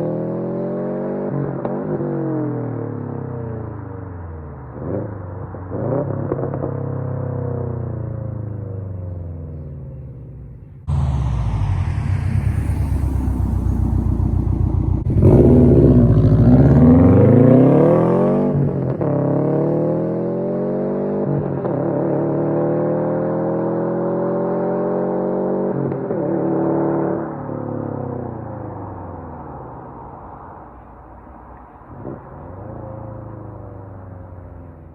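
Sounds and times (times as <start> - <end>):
car engine accelerating: 10.9 - 27.2.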